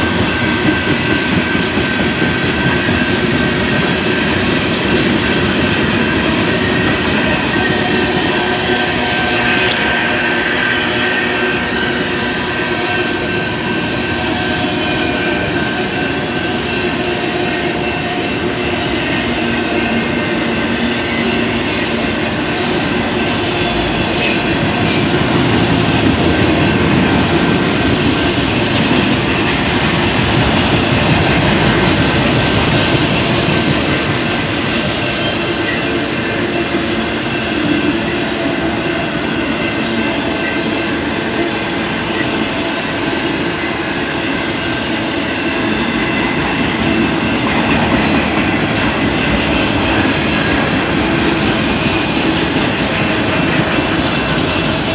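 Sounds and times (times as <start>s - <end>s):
freight train rumbling on rails: 0.0s - 54.9s.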